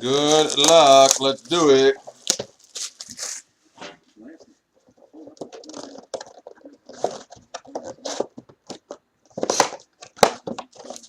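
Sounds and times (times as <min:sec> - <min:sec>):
card pack wrappers crackling: 0:00.1 - 0:03.4
wrapper ripping: 0:00.1 - 0:03.5.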